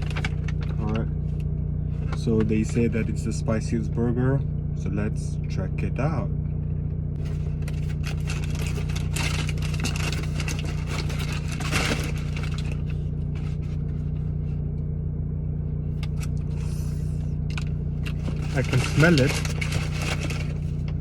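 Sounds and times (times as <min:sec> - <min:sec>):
food packaging crinkling: 0:00.0 - 0:00.8, 0:07.2 - 0:13.8, 0:17.6 - 0:20.8
steady low hum: 0:00.0 - 0:21.0.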